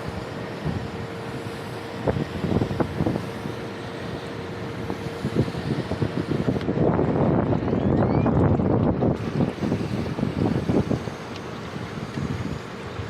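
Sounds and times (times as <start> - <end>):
water spraying from hose: 0.0 - 6.7, 9.0 - 13.0.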